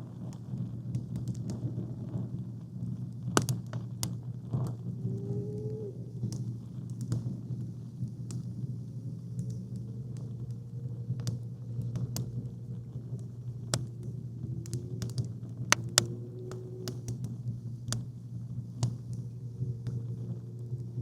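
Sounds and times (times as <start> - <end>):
campfire wood crackling: 0.0 - 21.0
steady low rumble: 0.0 - 21.0.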